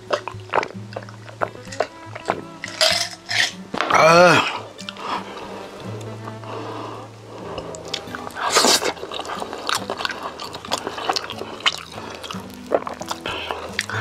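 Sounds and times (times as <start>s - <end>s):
chewing with moist clicks: 0.0s - 3.5s, 4.8s - 5.2s, 7.6s - 14.0s
loud bite: 7.4s - 14.0s.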